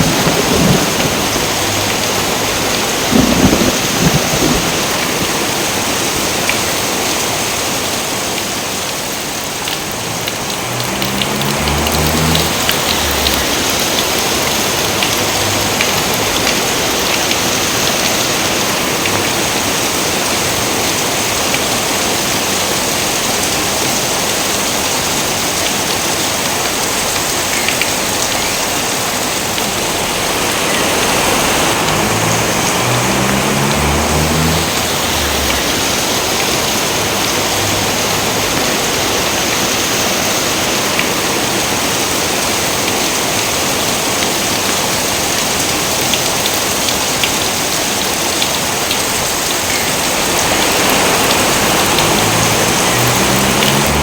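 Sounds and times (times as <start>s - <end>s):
heavy rain pouring: 0.0s - 54.0s
low rumble: 31.7s - 36.2s.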